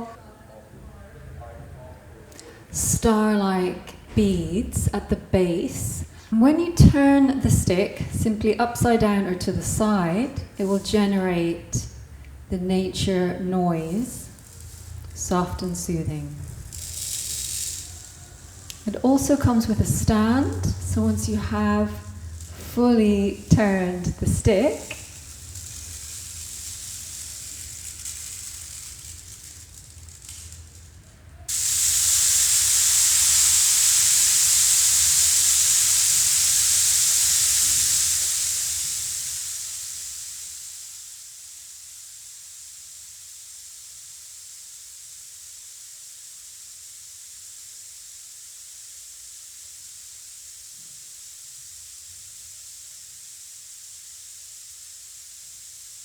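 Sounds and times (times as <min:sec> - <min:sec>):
rainstick beads cascading: 0:02.3 - 0:56.0.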